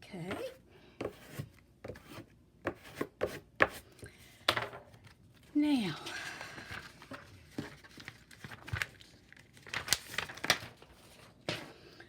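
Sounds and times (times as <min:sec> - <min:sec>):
paper crinkling and rustling: 0:05.0 - 0:11.8.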